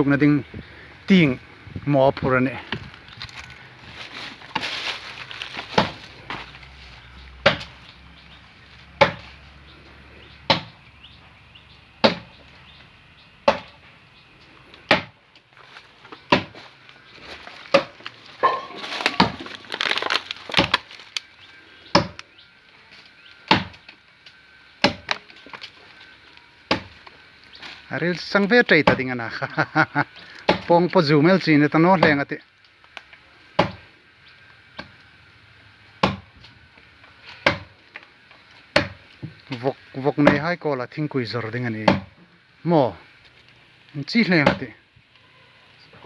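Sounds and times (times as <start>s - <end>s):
axe chopping tree trunk: 5.6s - 6.5s, 7.4s - 7.8s, 9.0s - 9.3s, 10.4s - 10.8s, 12.0s - 12.4s, 13.4s - 13.8s, 14.9s - 15.2s, 16.3s - 16.6s, 17.7s - 18.0s, 19.1s - 20.9s, 21.9s - 22.2s, 23.5s - 23.9s, 24.8s - 25.3s, 26.6s - 27.0s, 28.8s - 29.0s, 30.4s - 30.7s, 32.0s - 32.2s, 33.6s - 33.8s, 34.7s - 35.0s, 36.0s - 36.4s, 37.3s - 37.8s, 38.7s - 39.3s, 40.2s - 40.4s, 41.8s - 42.2s, 44.4s - 44.7s.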